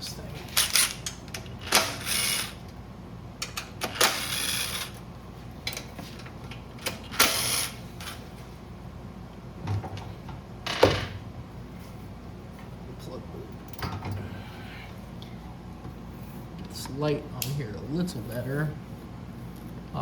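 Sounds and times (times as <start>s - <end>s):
ratchet clicking: 0.6s - 2.6s, 3.4s - 5.0s, 7.1s - 7.8s.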